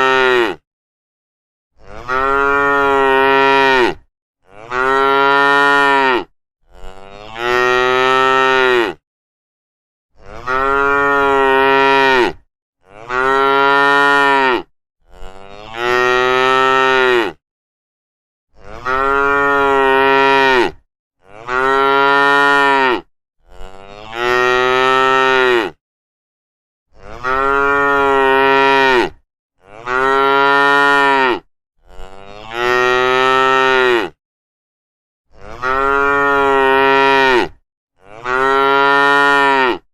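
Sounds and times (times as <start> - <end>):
cows mooing: 1.8 - 9.0, 10.2 - 17.4, 18.7 - 25.8, 27.0 - 34.2, 35.3 - 39.9.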